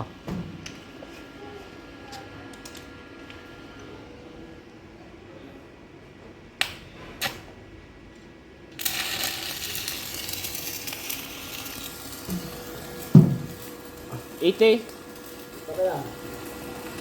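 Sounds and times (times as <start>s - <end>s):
stick welding crackling sizzle: 0.0s - 4.0s, 6.6s - 7.5s, 8.7s - 17.0s.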